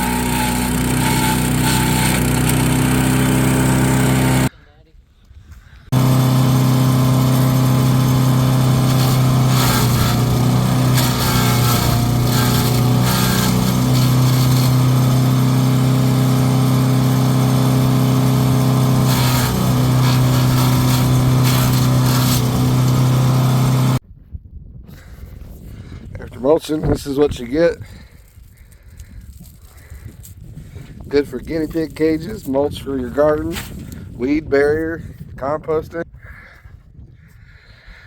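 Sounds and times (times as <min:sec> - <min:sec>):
chipper engine running: 0:00.0 - 0:04.5, 0:05.9 - 0:24.0
crackling shredding bursts: 0:00.0 - 0:04.5, 0:05.9 - 0:24.0.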